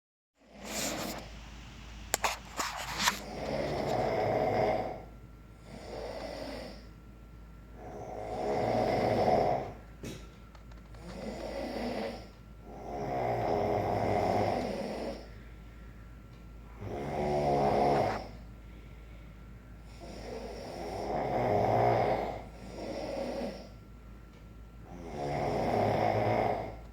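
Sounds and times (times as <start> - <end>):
person snoring heavily: 0.5 - 1.2, 2.2 - 6.9, 7.8 - 9.8, 11.0 - 15.3, 16.8 - 18.4, 19.9 - 23.8, 24.8 - 26.8.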